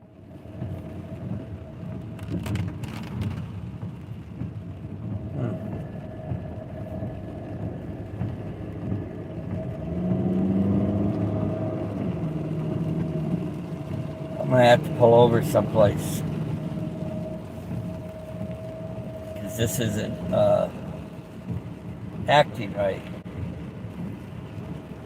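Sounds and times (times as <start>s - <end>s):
car engine and road rumble: 0.0s - 25.0s
thin whine: 13.4s - 21.4s.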